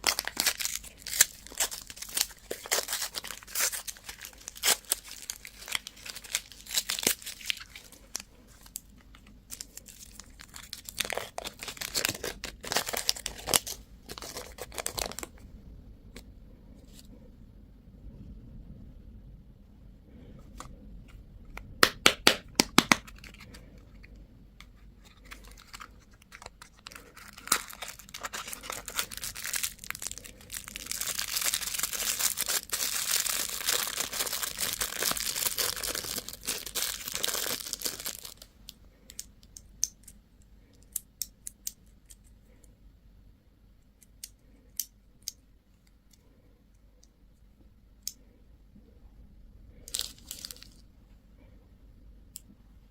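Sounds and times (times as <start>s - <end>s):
candy wrapper crinkling and tearing: 0.0s - 15.4s, 21.8s - 24.1s, 25.0s - 40.1s, 49.8s - 50.9s.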